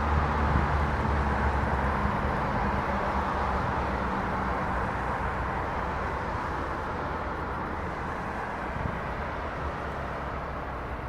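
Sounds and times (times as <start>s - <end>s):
vehicle roar with engine hum: 0.0s - 11.0s.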